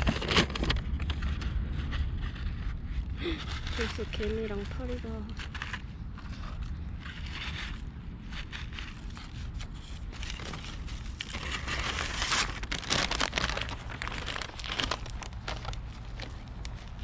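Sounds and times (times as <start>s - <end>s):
plastic bag crinkling: 10.1s - 17.0s.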